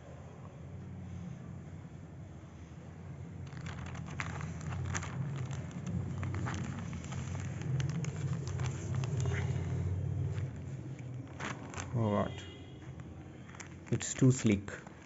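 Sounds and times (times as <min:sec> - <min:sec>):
plastic wrap crinkling: 0:03.4 - 0:15.0.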